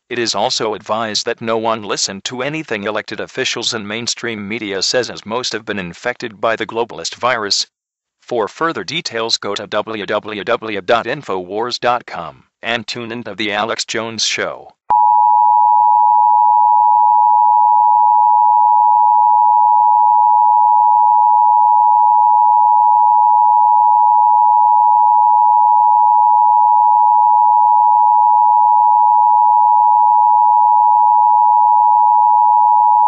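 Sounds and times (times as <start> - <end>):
electronic alarm tone: 14.9 - 33.0.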